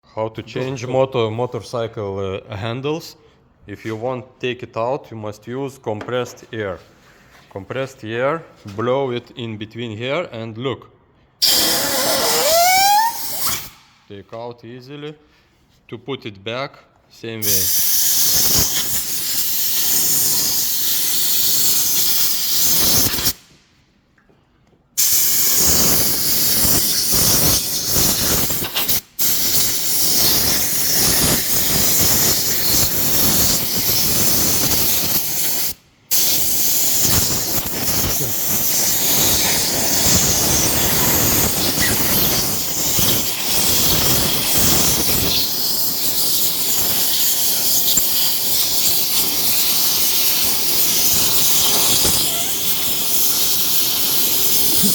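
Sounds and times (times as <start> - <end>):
compressed air blow gun hissing: 11.4 - 13.9, 17.4 - 23.5, 25.0 - 54.9.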